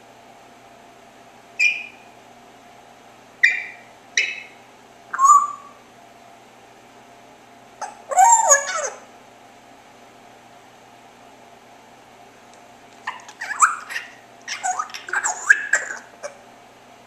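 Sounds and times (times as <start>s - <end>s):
parrot chirps: 1.6s - 2.1s, 3.4s - 5.8s, 7.8s - 9.1s, 13.0s - 16.4s.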